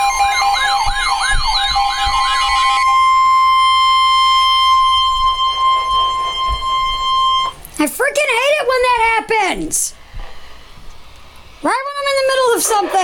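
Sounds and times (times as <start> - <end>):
fast siren-like warble: 0.0 - 7.6
steady warning alarm tone: 0.0 - 7.6.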